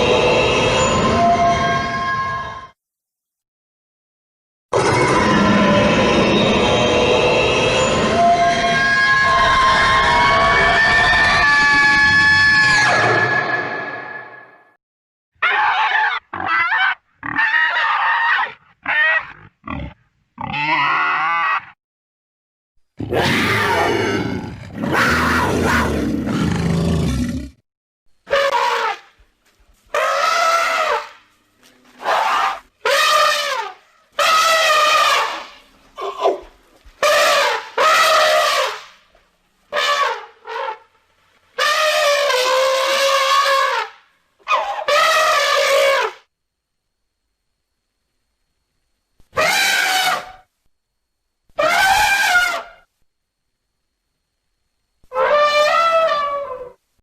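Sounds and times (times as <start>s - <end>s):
monster horn-like calls: 4.7s - 14.4s, 41.6s - 46.3s, 49.3s - 50.4s, 51.6s - 52.9s
pig-like grunts and squeals: 4.8s - 14.0s, 15.4s - 21.8s, 23.0s - 27.6s.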